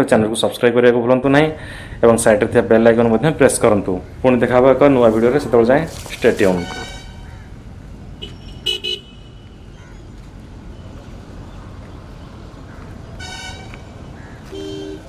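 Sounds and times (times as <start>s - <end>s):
outdoor background noise: 0.0s - 15.0s
vehicle horns honking: 6.4s - 7.3s, 8.2s - 9.7s, 13.2s - 15.0s.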